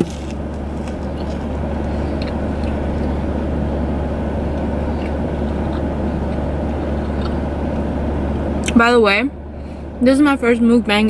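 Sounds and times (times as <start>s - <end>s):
chewing clicks: 0.0s - 2.8s
car engine hum inside cabin: 0.0s - 11.0s.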